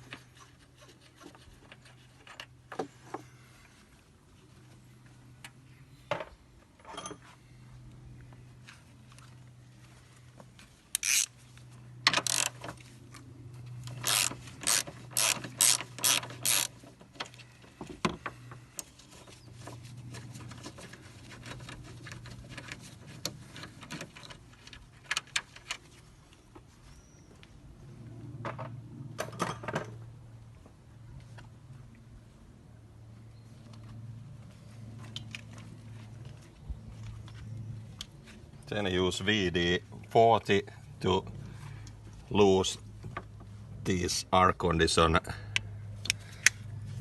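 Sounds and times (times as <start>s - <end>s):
ratchet wrench clicking: 11.0s - 11.3s, 12.2s - 12.6s, 14.0s - 16.7s.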